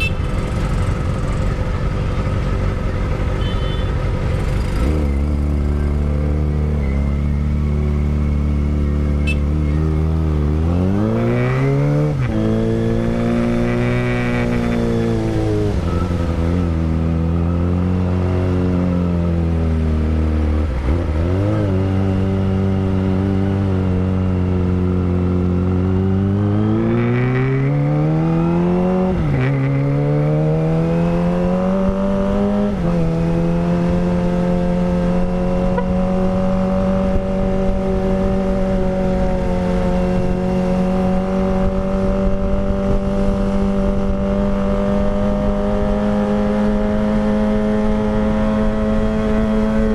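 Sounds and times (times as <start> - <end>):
motorcycle engine revving: 0.0 - 49.9.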